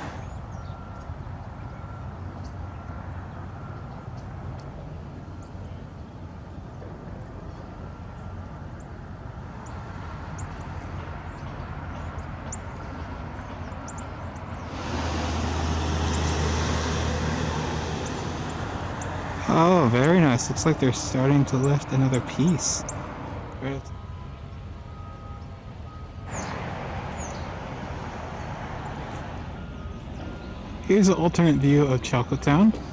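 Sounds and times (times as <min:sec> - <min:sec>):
deep engine drone: 0:00.0 - 0:10.4, 0:13.9 - 0:32.9
rumble of engines and traffic: 0:00.0 - 0:32.9.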